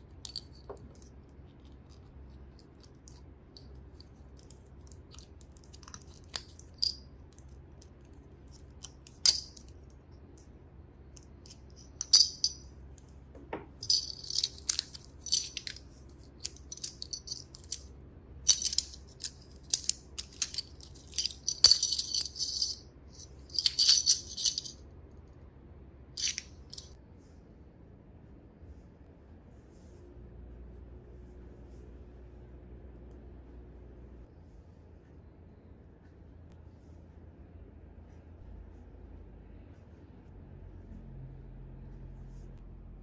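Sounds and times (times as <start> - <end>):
plastic toy pieces rattling: 2.6 - 7.0, 8.5 - 9.7, 11.5 - 12.6, 13.8 - 17.9, 18.5 - 24.8, 26.2 - 26.9.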